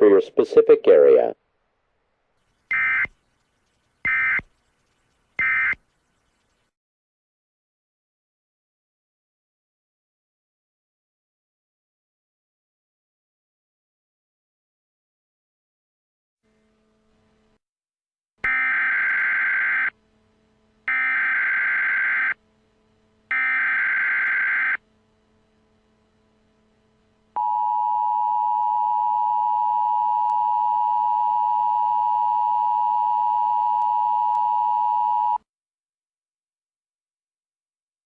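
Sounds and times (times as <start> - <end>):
digital data tone bursts: 2.7 - 6.5.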